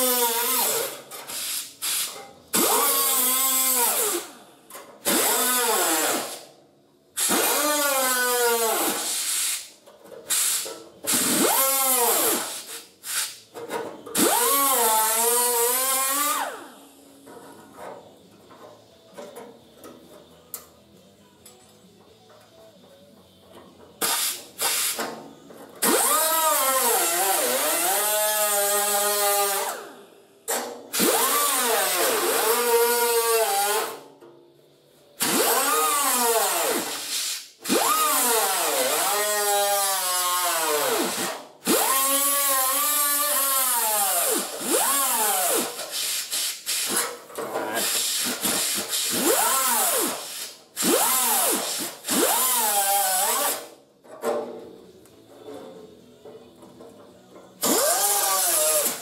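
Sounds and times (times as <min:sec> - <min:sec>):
electric grinder on sheet steel: 0:47.8 - 0:53.7, 0:57.6 - 0:59.0.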